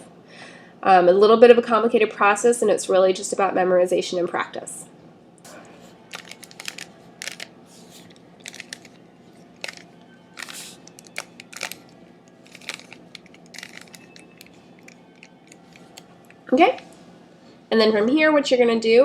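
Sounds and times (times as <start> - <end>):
puzzle cube clicking and rasping: 6.1 - 16.1.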